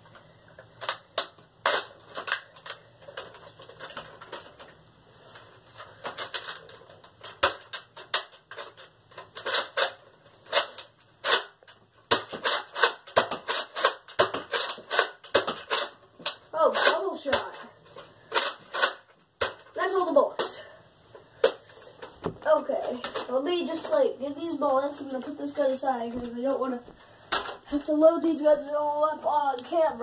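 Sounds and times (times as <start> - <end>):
toy blaster plastic clicking: 7.3 - 17.6, 18.3 - 19.6.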